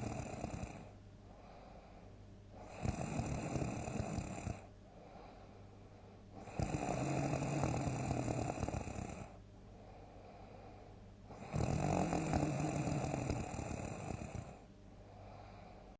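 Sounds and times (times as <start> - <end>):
person snoring loudly: 0.0 - 0.9, 2.6 - 4.7, 6.4 - 9.4, 11.3 - 14.6.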